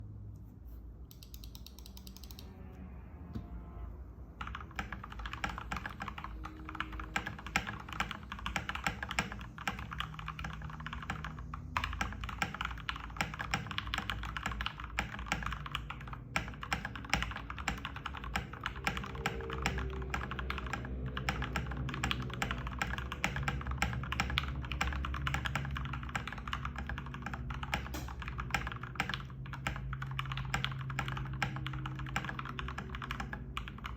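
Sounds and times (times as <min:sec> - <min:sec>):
mechanical keyboard typing: 0:01.1 - 0:02.5, 0:04.4 - 0:33.9.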